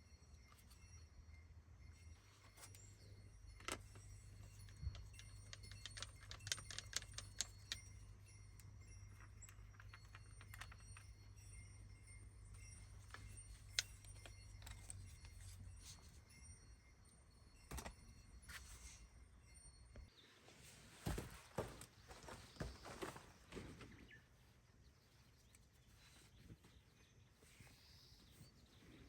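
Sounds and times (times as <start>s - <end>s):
small hard objects clinking: 3.0s - 15.7s.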